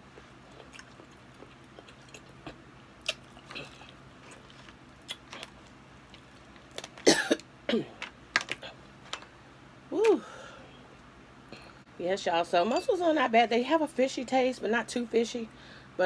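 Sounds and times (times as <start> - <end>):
cough-like vocal burst: 7.1 - 7.9.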